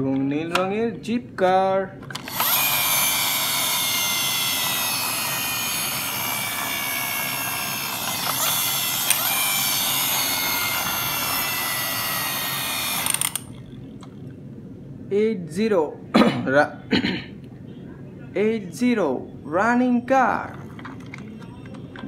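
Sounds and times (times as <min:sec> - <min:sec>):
toy car motor whirring: 0:02.1 - 0:13.7.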